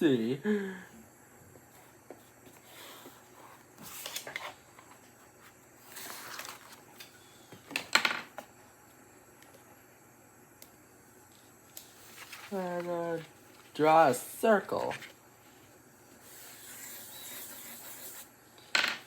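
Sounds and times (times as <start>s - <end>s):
pen scratching on paper: 16.2s - 18.3s.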